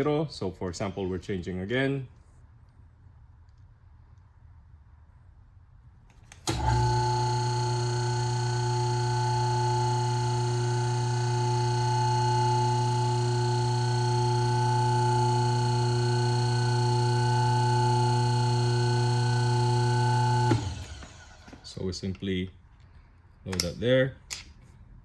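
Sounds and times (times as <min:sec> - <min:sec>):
electric pump motor humming: 0:06.4 - 0:21.6.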